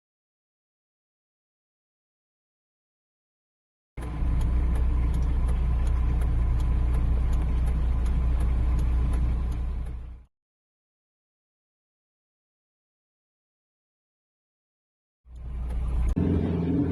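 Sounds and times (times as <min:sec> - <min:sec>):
faint high ticks: 0:04.0 - 0:10.1, 0:15.3 - 0:16.2
vehicle engine rumbling: 0:04.0 - 0:10.3, 0:15.3 - 0:16.9.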